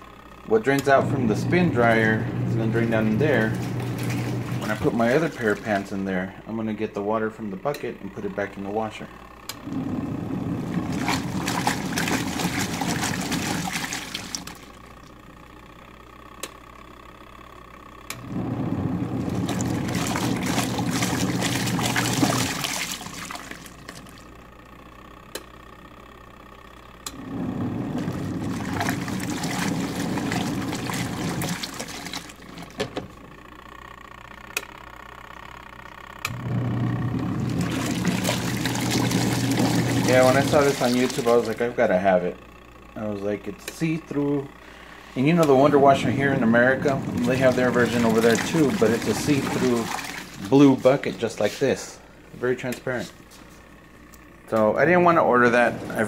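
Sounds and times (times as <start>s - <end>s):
washing machine motor: 0.0s - 56.0s
water sloshing: 2.7s - 6.0s, 10.3s - 14.8s, 18.9s - 24.3s, 27.4s - 33.1s, 37.2s - 41.7s, 45.3s - 51.8s.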